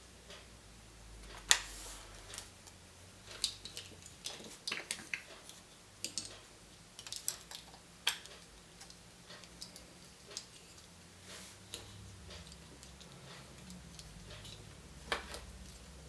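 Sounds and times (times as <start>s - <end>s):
plastic packaging clicks and crinkles: 2.3s - 10.9s.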